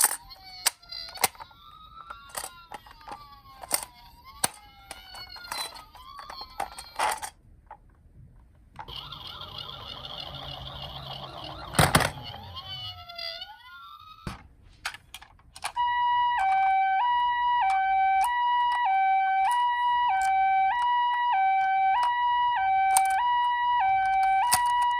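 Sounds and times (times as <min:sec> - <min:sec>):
toy siren wailing: 0:00.0 - 0:07.2, 0:08.9 - 0:14.3, 0:15.7 - 0:24.9
buzzy electronic siren: 0:08.9 - 0:13.6, 0:15.8 - 0:24.9
two-tone hi-lo siren: 0:08.9 - 0:13.6, 0:15.8 - 0:24.9.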